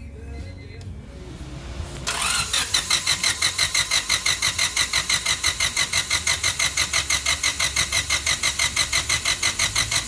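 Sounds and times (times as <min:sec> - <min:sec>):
starter motor cranking engine: 0:02.0 - 0:10.0.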